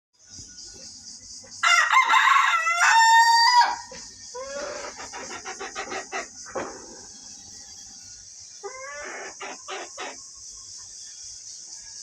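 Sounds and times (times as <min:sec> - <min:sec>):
rooster crowing: 0:01.6 - 0:05.0
chicken clucking: 0:01.8 - 0:07.4, 0:08.6 - 0:11.0.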